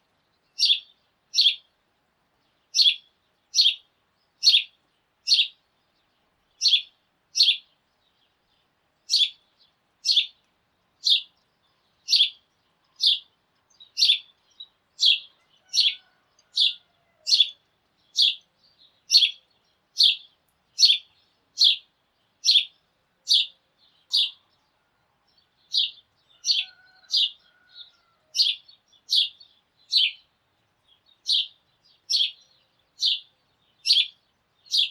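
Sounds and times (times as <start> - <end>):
sparrow chirping: 0.0 - 1.8, 2.4 - 34.9
faint bird calls: 11.0 - 18.5, 19.1 - 30.3, 31.2 - 34.9.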